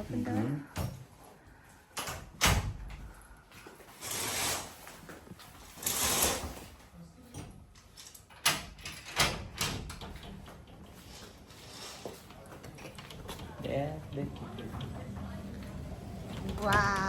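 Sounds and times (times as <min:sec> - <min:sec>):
door scraping: 0:04.0 - 0:06.8, 0:10.2 - 0:17.0.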